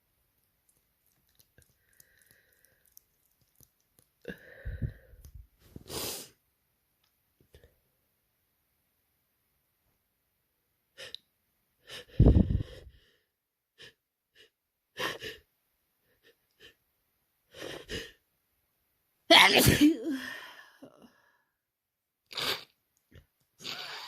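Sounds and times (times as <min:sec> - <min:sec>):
gasping breaths: 0:01.6 - 0:03.0, 0:04.2 - 0:05.3
person sneezing: 0:19.3 - 0:20.3.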